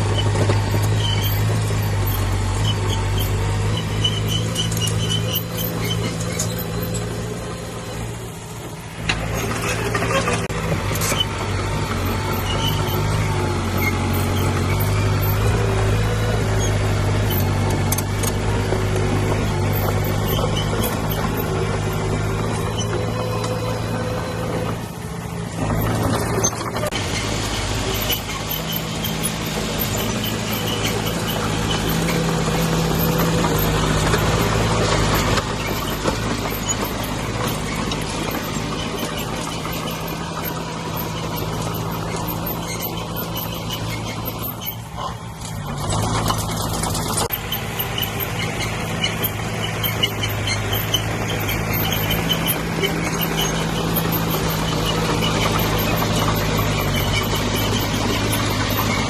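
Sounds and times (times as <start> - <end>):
heavy machinery diesel engine: 0.0 - 59.0.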